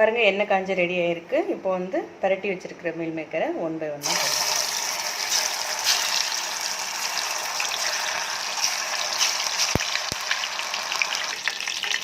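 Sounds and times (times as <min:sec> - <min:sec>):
food sizzling in hot oil: 0:04.0 - 0:12.0.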